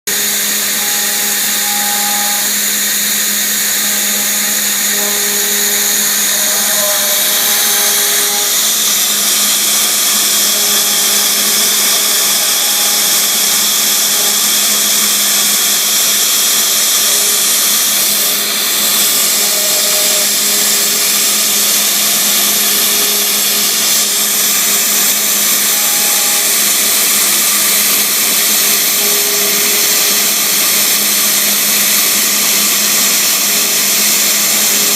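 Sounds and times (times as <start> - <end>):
router spindle cutting hiss: 0.1 - 34.9
stepper motors whining: 0.1 - 34.9.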